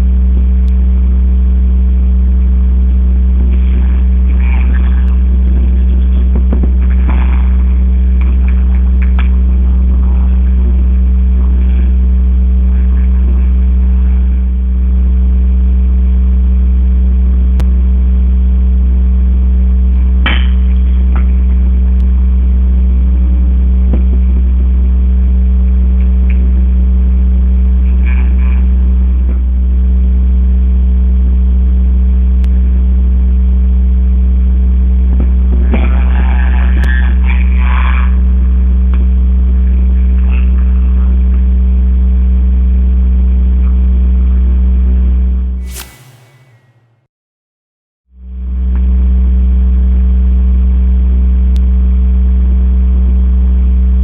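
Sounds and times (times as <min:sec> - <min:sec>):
loud low hum: 0:00.0 - 0:25.1, 0:45.6 - 0:47.1
sharp knock: 0:45.6 - 0:47.0.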